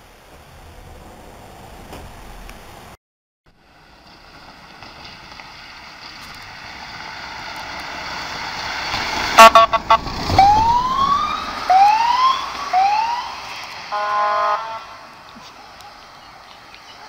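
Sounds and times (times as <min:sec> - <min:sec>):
ambulance road noise: 0:03.5 - 0:17.0
bullhorn blasts: 0:09.4 - 0:10.1, 0:13.9 - 0:15.0
wail siren: 0:09.4 - 0:15.0.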